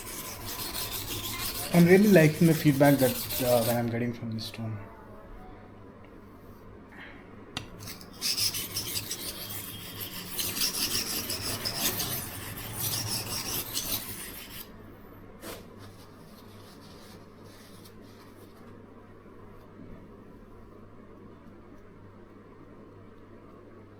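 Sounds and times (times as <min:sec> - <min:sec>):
knife scraping on sharpening stone: 0:00.0 - 0:03.8, 0:07.8 - 0:14.7.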